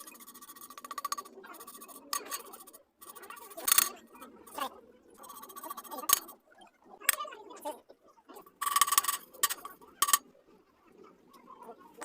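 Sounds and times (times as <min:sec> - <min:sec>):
metal tapping on metal: 0:08.6 - 0:10.2.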